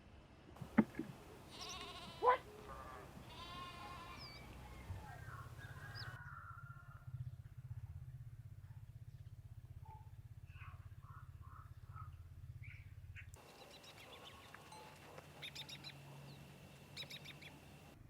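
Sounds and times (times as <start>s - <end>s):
sharp knocks: 0.6s - 1.2s
low steady hum: 0.6s - 18.0s
goat bleating: 0.8s - 5.0s.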